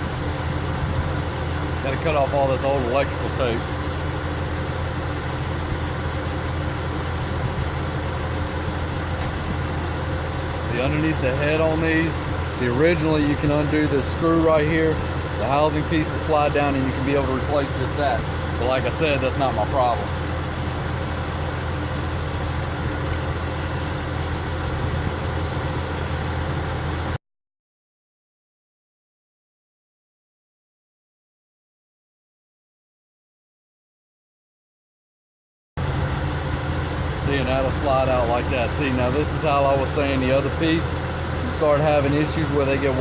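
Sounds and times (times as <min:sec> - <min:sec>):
diesel engine idling: 0:00.0 - 0:27.2, 0:35.8 - 0:43.0.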